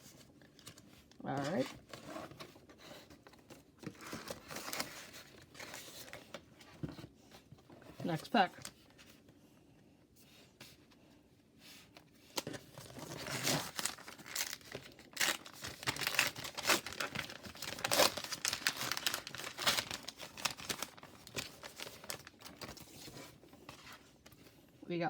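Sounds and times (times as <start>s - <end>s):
wrapper tearing and crinkling: 12.7s - 23.2s.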